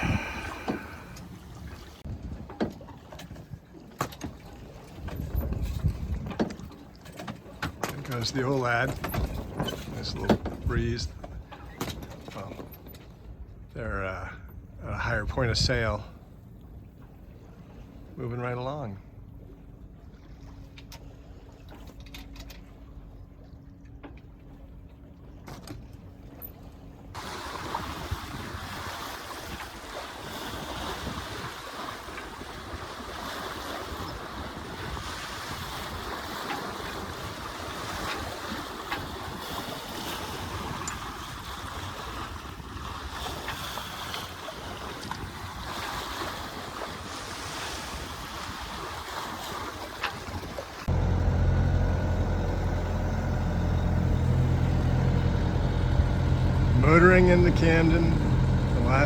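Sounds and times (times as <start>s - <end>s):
wind buffeting microphone: 0.0s - 2.6s, 5.0s - 6.7s, 27.2s - 59.0s
water rushing past boat: 0.0s - 59.0s.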